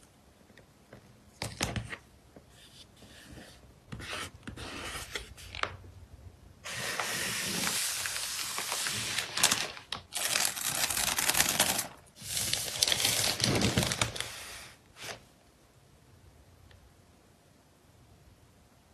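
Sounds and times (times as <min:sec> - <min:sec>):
packaging crinkling and rustling: 0:06.7 - 0:15.2.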